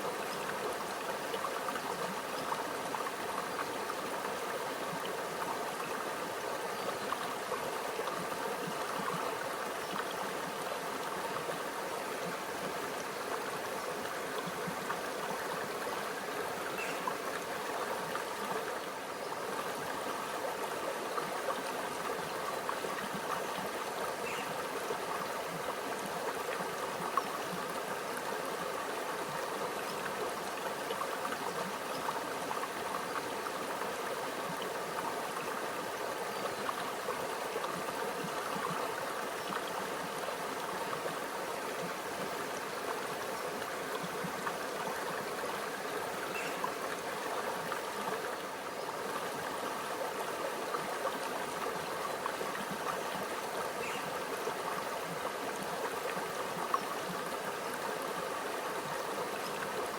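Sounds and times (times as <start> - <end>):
stream trickling over rocks: 0.0 - 59.9.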